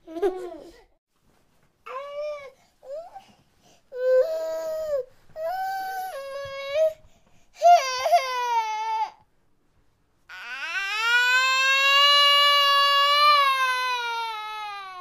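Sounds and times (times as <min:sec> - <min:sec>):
baby crying: 0:10.3 - 0:15.0.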